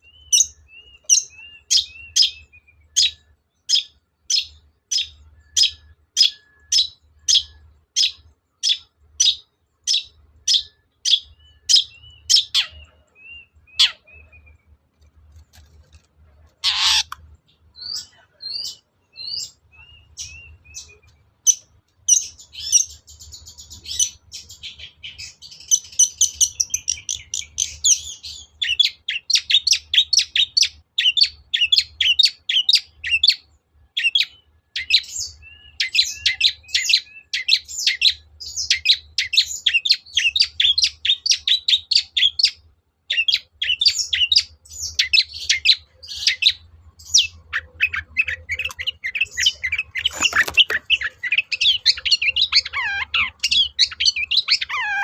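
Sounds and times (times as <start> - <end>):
shrike singing: 16.5 - 28.1.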